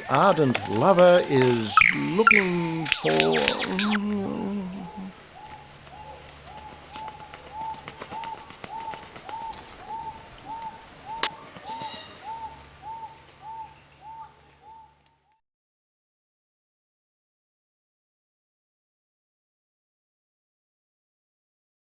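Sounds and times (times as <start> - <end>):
scattered clicks: 0.0 - 4.0
lyrebird calling: 0.0 - 15.0.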